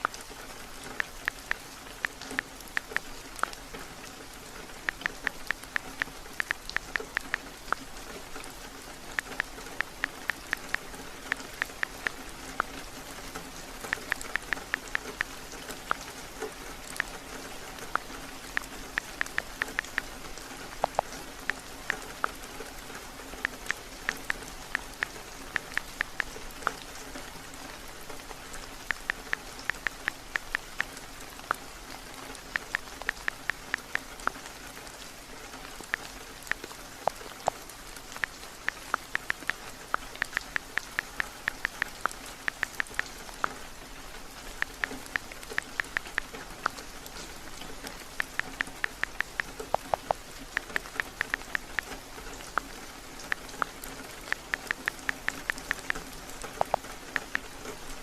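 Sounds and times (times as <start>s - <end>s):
steady rain: 0.0s - 58.0s
taps on phone keyboard: 1.0s - 3.1s, 4.8s - 7.8s, 28.9s - 30.9s, 48.2s - 51.9s, 56.6s - 57.4s.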